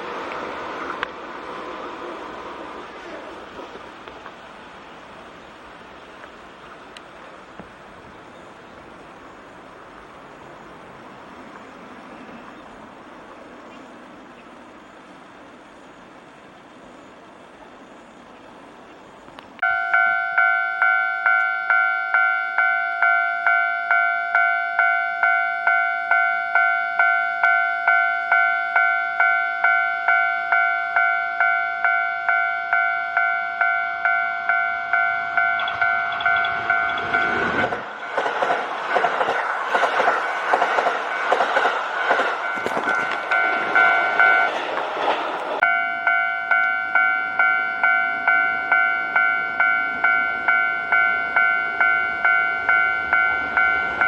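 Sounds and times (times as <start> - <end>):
train passing over rails: 0.0 - 54.0
level-crossing warning bell: 19.6 - 54.0.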